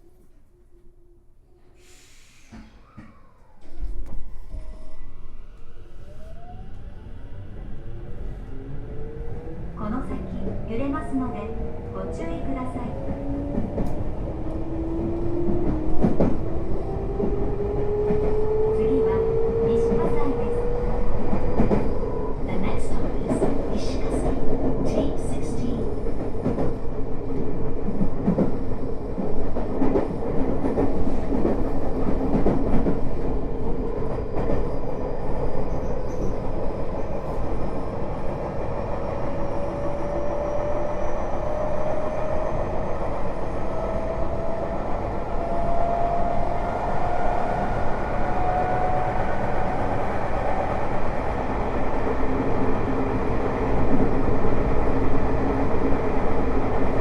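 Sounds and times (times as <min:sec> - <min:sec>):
train wheels rumbling: 0:08.2 - 0:57.0
rail joint clicks: 0:12.9 - 0:38.8.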